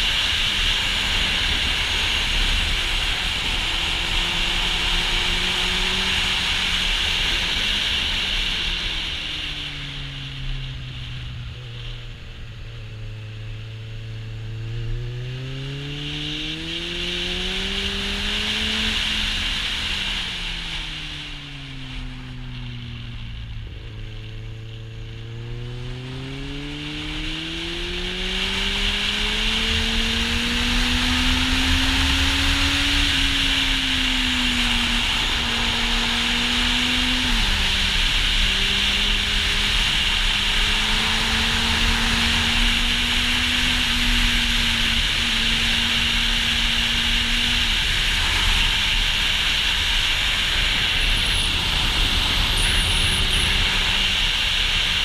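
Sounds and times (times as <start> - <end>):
motorcycle engine accelerating: 0.0 - 55.0
wind noise hiss: 30.8 - 55.0.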